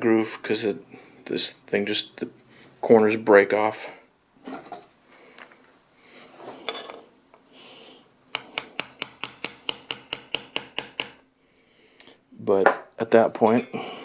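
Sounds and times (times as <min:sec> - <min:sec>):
quiet handling and scraping: 0:04.4 - 0:07.5
small hammer tapping a punch: 0:08.6 - 0:11.2.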